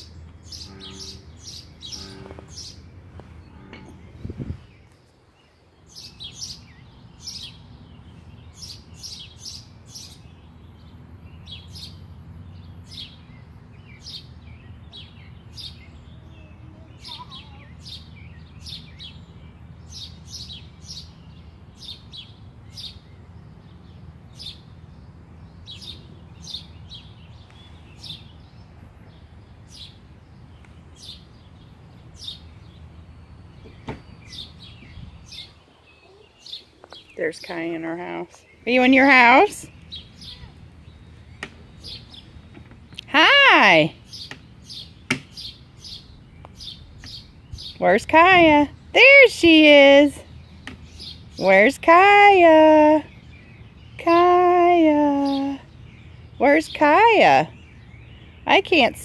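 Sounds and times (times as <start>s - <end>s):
steady low hum: 0.0s - 4.9s
small birds chirping: 0.0s - 59.0s.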